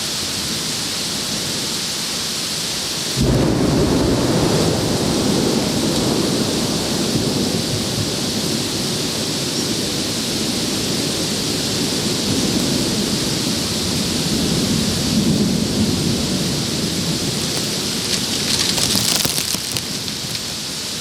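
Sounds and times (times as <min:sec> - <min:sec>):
heavy rain on plastic bag: 0:02.4 - 0:21.0.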